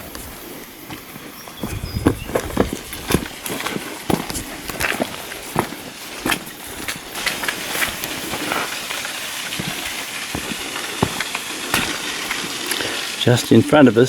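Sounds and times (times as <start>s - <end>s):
ferns brushing and crackling: 0.0s - 14.0s
footsteps on rough track: 0.0s - 14.0s
steady hiss: 0.0s - 14.0s.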